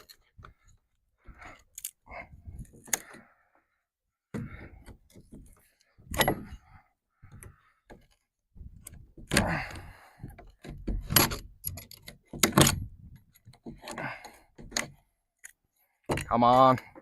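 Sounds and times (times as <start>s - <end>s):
wood and metal knocking: 4.3s - 6.7s, 7.3s - 15.1s, 16.0s - 17.0s.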